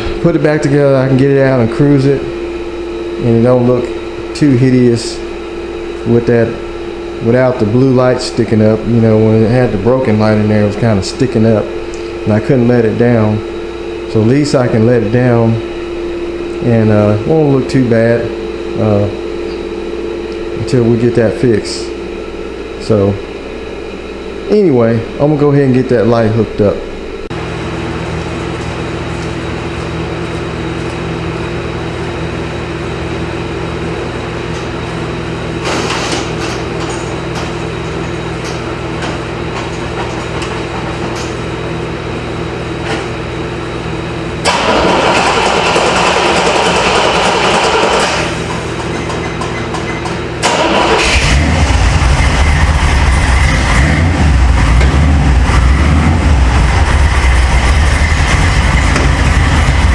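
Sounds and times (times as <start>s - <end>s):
car engine idling: 44.4s - 59.9s.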